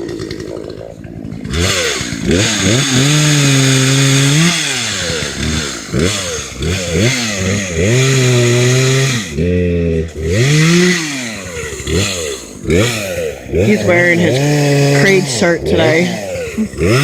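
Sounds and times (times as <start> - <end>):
chainsaw revving: 0.0 - 17.0.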